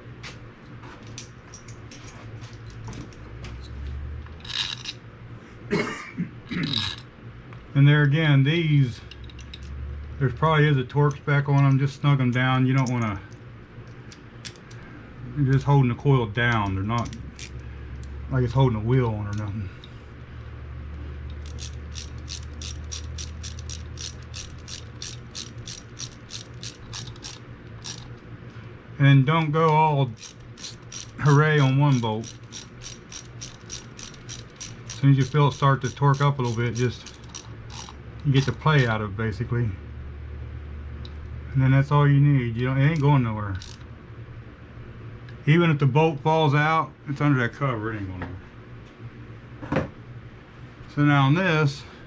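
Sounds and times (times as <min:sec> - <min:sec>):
steady low hum: 0:00.0 - 0:52.0
small metal parts clicking: 0:04.3 - 0:05.0, 0:06.6 - 0:07.0, 0:09.1 - 0:09.8, 0:13.9 - 0:14.8, 0:21.3 - 0:28.2, 0:30.1 - 0:38.9, 0:42.9 - 0:43.9.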